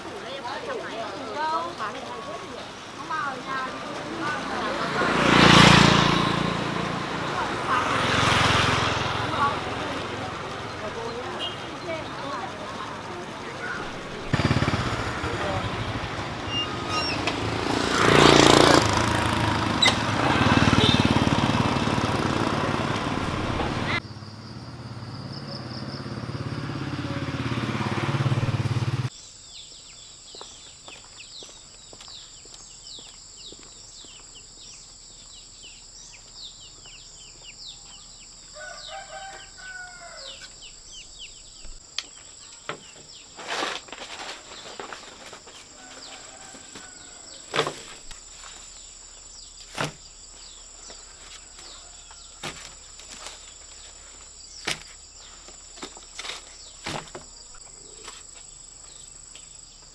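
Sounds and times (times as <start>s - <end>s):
insect drone: 0.0s - 31.0s
bird chirps: 0.0s - 59.9s
small engine running: 1.6s - 29.1s.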